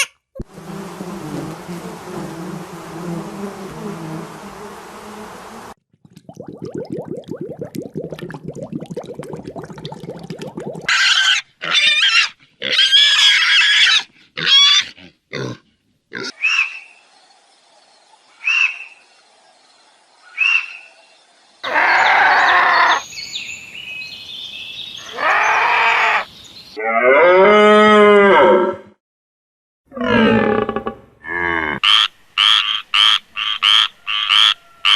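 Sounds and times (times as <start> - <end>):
high animal squeals: 10.9 - 15.1, 21.6 - 23.0, 25.0 - 28.7
long noisy animal call: 21.6 - 23.0, 25.0 - 28.8
rising and falling animal call: 25.0 - 28.9.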